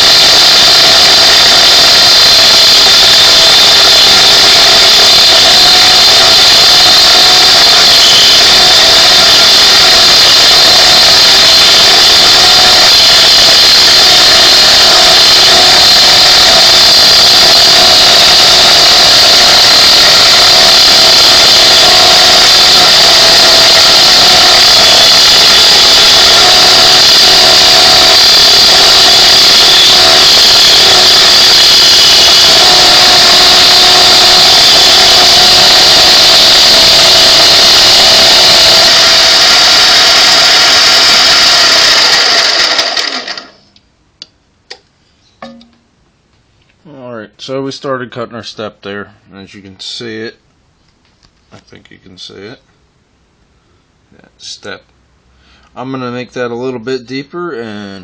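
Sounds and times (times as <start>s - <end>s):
metal lathe cutting: 0.0s - 43.6s.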